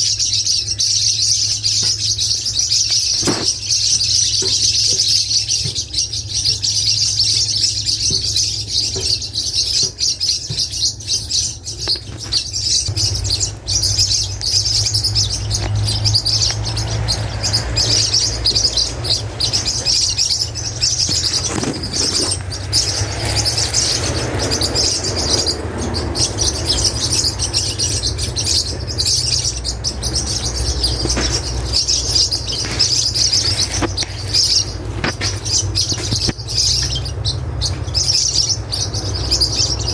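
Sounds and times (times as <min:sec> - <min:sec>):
parakeets chattering: 0:00.0 - 0:39.9.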